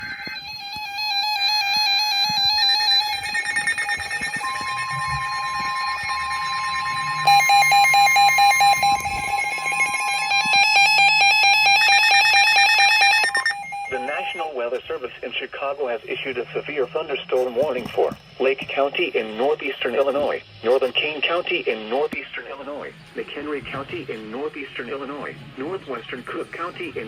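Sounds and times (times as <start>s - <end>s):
rapid pulsing beep: 0.0s - 14.5s, 18.7s - 22.1s
weather radio alarm beeps: 0.0s - 14.8s, 15.5s - 22.2s
steady electronic tone: 0.0s - 22.1s.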